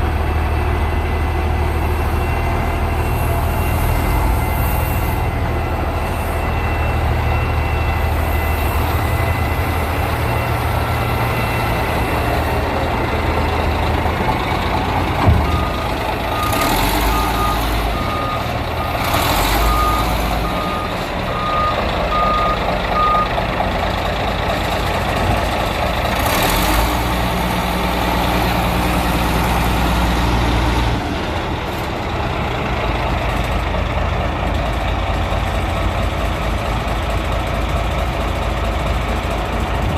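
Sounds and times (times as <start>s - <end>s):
diesel engines running: 0.0s - 39.9s
backup alarm beeping: 5.2s - 23.4s
short thump: 15.2s - 15.6s.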